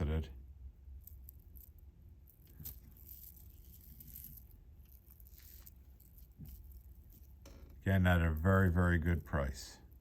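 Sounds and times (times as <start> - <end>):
low steady hum: 0.0 - 10.0
beads clicking and scraping: 0.9 - 8.7.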